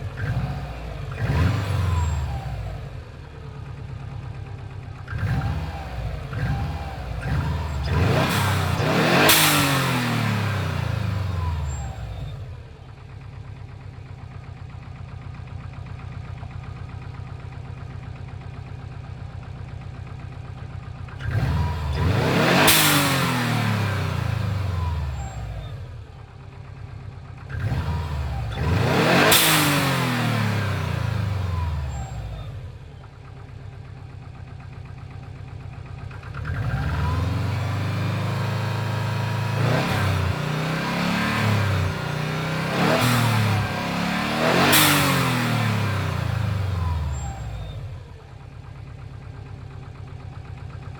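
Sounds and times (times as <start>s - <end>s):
engine knock: 0.0s - 9.6s, 10.3s - 22.9s, 24.1s - 29.8s, 30.8s - 40.5s, 46.0s - 50.9s
car engine idling and revving: 0.0s - 50.9s.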